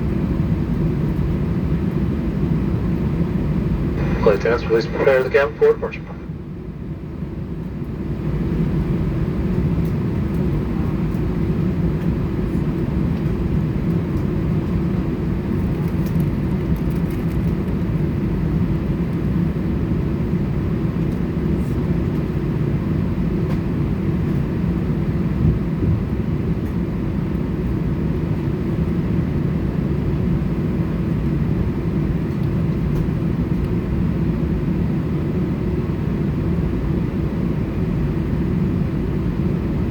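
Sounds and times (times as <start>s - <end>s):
jet engines heard from cabin: 0.0s - 39.9s.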